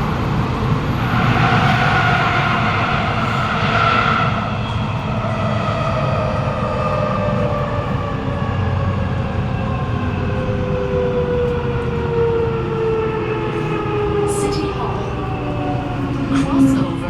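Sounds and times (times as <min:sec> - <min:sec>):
train running rumble: 0:00.0 - 0:17.0.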